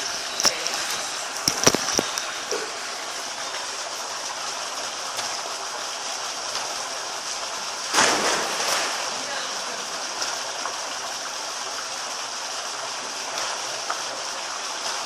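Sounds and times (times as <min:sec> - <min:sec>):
loud water splash: 0:07.9 - 0:10.2.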